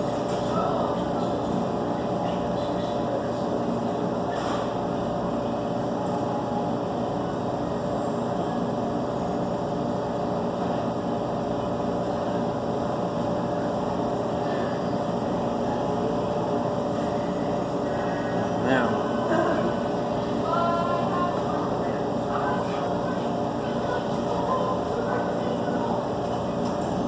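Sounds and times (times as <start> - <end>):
steady mechanical hum: 0.0 - 27.0.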